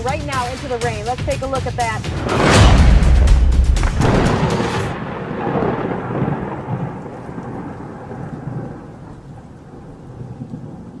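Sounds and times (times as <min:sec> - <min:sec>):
low rumble: 0:01.9 - 0:06.0
rain: 0:03.8 - 0:11.0.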